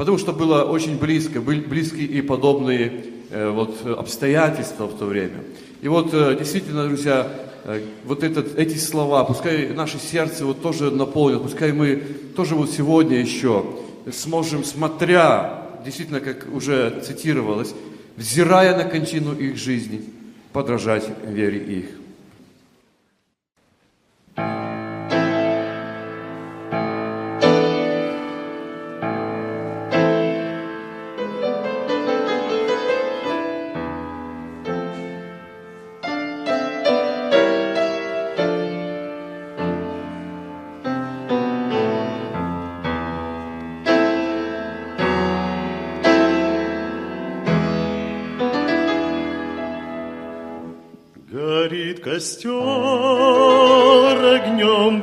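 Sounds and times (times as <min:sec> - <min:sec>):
slow piano chords: 0:24.3 - 0:55.0.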